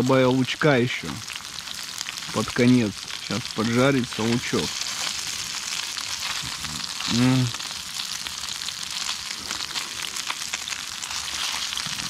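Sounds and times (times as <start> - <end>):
fish and onion sizzling in oil: 0.0 - 12.0
man humming: 6.4 - 7.6.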